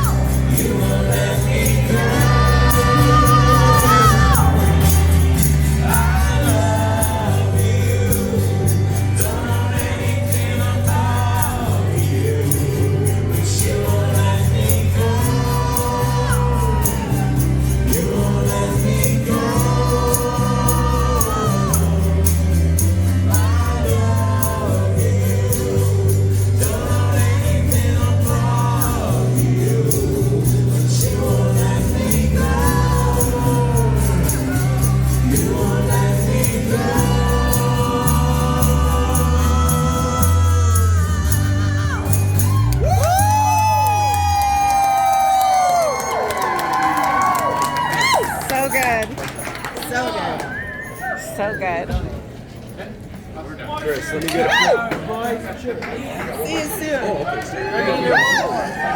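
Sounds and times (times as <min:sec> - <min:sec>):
strummed guitar: 0:00.0 - 0:44.4
bass notes: 0:00.0 - 0:45.9
person singing: 0:00.0 - 0:48.7.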